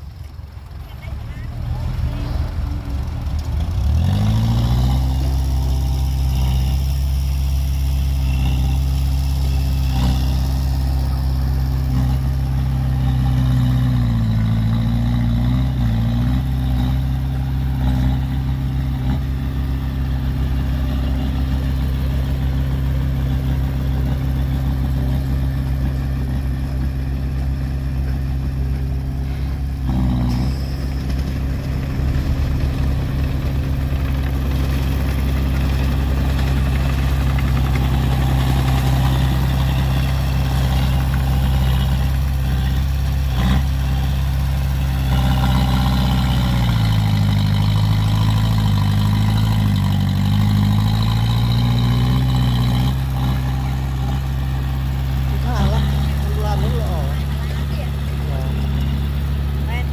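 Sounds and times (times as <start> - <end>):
engine revving: 1.0 - 59.9.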